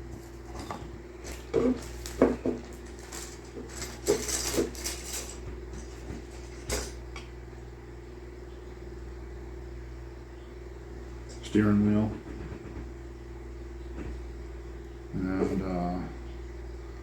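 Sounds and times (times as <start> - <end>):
plastic bags rustling: 0.2 - 7.0.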